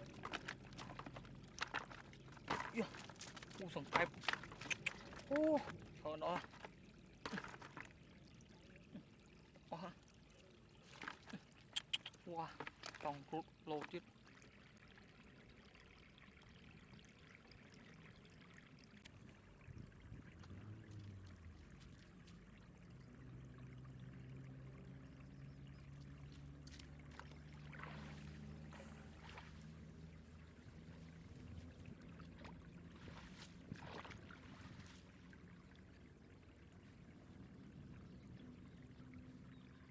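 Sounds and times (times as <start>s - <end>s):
low steady hum: 0.0s - 39.9s
water pouring and trickling: 0.0s - 39.9s
splashy water rushes: 27.0s - 29.9s.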